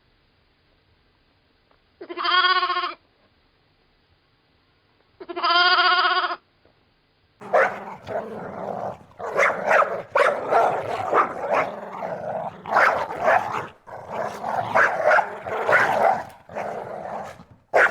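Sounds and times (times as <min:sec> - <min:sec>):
animal bleat: 0:02.1 - 0:02.9, 0:05.3 - 0:06.2
dog barking: 0:07.4 - 0:17.9.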